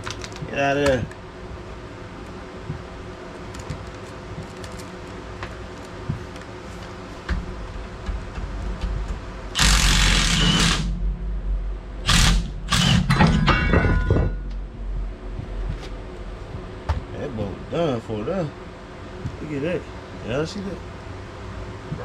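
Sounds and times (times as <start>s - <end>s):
impact wrench hammering: 9.6s - 11.2s, 12.0s - 14.6s.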